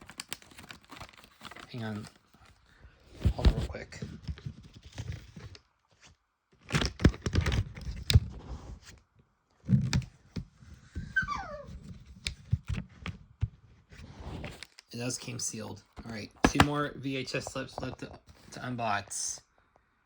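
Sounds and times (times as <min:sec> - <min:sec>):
dog whining: 0:11.1 - 0:11.9
knocks and rustling from handling: 0:16.4 - 0:16.8.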